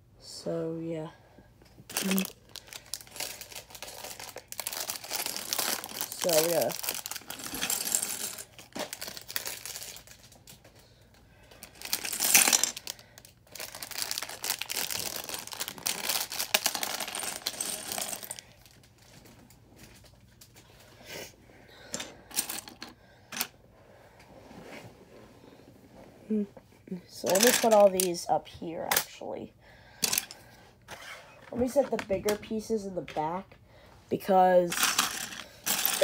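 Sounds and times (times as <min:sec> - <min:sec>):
small plastic pieces clattering: 0:01.9 - 0:10.6, 0:11.6 - 0:18.8, 0:27.2 - 0:28.2, 0:34.7 - 0:36.0
plastic bags crinkling: 0:01.9 - 0:10.8, 0:11.5 - 0:20.4, 0:34.7 - 0:36.0.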